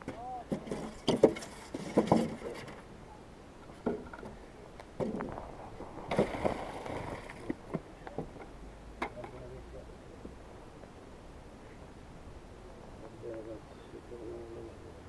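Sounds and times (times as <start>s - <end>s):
knocks and scrapes: 0.0s - 2.9s, 5.0s - 9.4s.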